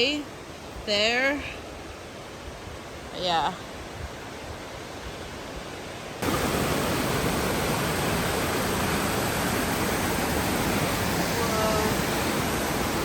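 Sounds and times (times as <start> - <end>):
waterfall rushing: 6.2 - 13.0.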